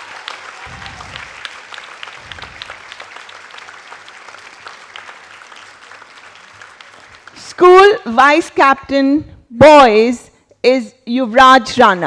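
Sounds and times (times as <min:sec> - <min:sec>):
audience applauding: 0:00.0 - 0:07.4.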